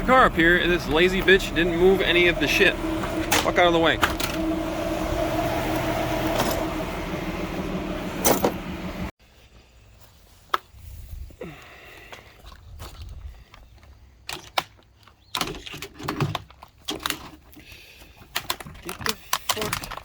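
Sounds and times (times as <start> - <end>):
car engine running: 0.0 - 9.1.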